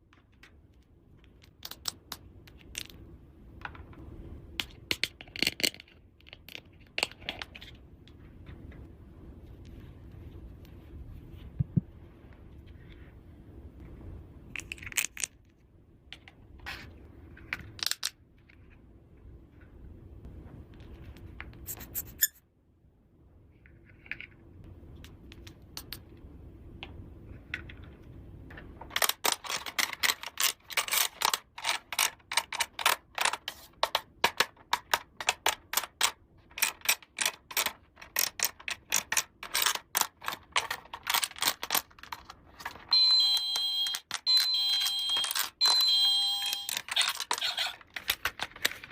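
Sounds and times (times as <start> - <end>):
plastic toy pieces clicking: 1.2 - 3.0, 4.6 - 7.7, 17.6 - 18.2, 28.9 - 48.9
electronic beeping: 42.9 - 46.8.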